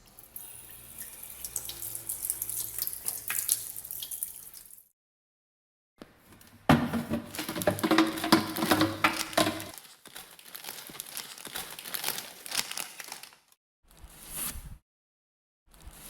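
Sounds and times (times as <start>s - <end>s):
paper or plastic crinkling: 7.1s - 13.5s.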